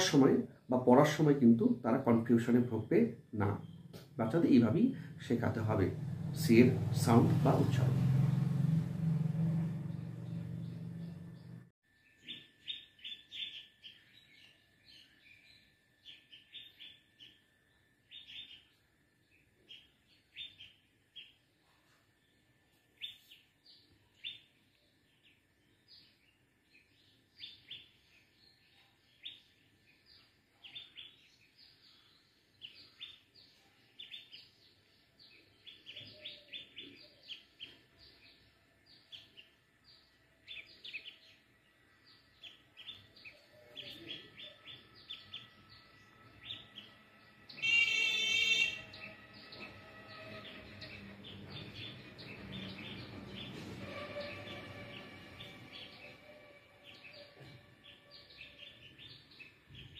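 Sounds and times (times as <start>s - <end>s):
small birds chirping: 0.0s - 59.9s
louder bird call: 43.4s - 59.9s.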